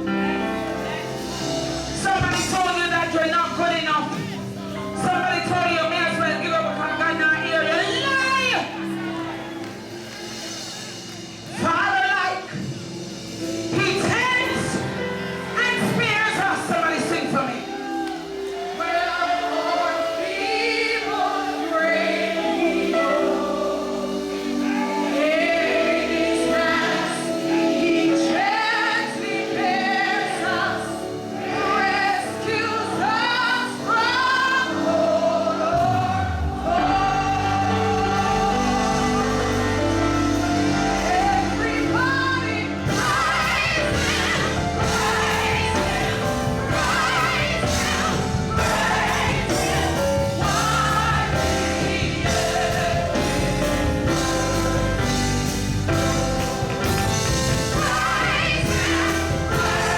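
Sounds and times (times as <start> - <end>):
gospel choir singing: 0.0 - 59.9
instrumental accompaniment: 0.0 - 59.9
heavy bass: 36.5 - 59.9.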